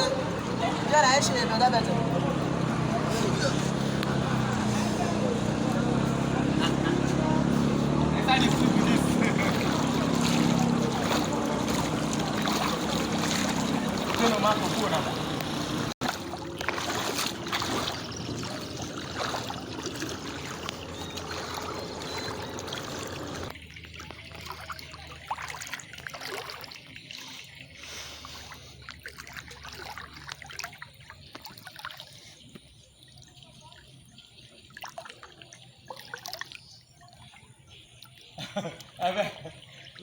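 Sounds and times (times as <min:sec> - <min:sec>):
water trickling and splashing: 0:00.0 - 0:40.0.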